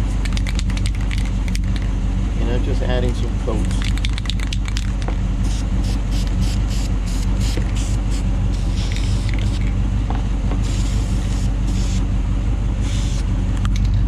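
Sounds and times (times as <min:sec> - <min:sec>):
bursts of hiss: 0:05.4 - 0:09.6, 0:10.6 - 0:12.0, 0:12.8 - 0:13.3.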